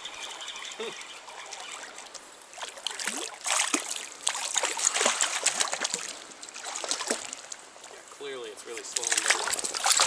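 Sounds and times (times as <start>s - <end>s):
water trickling: 0.0s - 10.0s
fish splashing at water surface: 2.6s - 7.5s, 9.0s - 10.0s.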